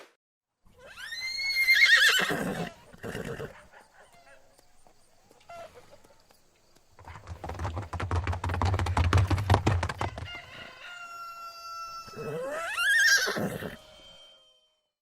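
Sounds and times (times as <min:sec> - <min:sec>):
horse whinnying: 0:00.7 - 0:03.6, 0:12.0 - 0:13.8
horse hooves beating: 0:03.6 - 0:10.6.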